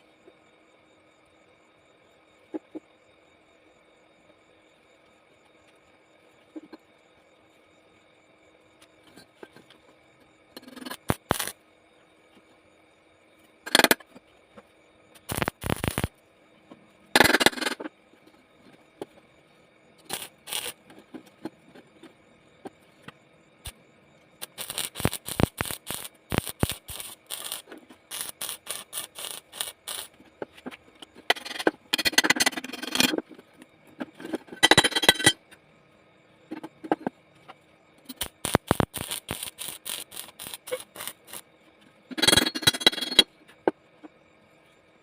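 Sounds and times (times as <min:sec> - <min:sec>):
welding arc crackling: 0:10.6 - 0:11.6, 0:15.2 - 0:16.1, 0:20.1 - 0:20.8, 0:24.4 - 0:30.2, 0:38.1 - 0:41.4.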